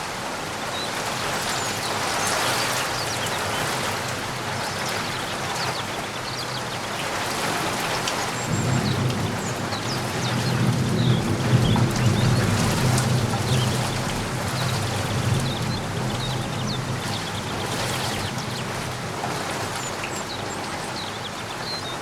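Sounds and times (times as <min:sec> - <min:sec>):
rain pattering: 0:00.0 - 0:22.0.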